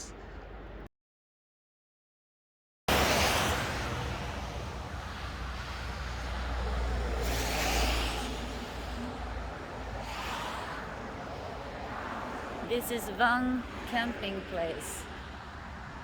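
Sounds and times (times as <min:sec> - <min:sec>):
car passing by: 0:02.9 - 0:12.8.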